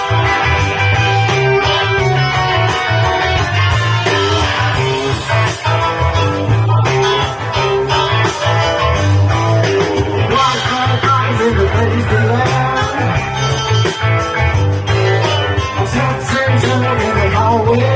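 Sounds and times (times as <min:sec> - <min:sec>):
live rock band playing: 0:00.0 - 0:17.9
person singing: 0:10.2 - 0:13.8, 0:14.9 - 0:17.9.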